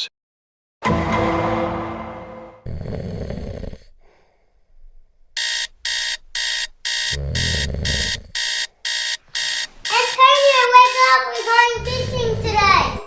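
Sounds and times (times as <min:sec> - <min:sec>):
alarm clock beeping: 0:05.4 - 0:13.0.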